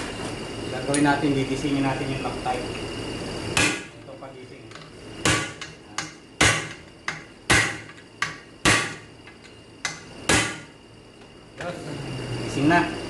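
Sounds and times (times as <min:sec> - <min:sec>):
hammer striking metal: 0:03.6 - 0:03.9, 0:05.2 - 0:09.0, 0:09.8 - 0:10.7.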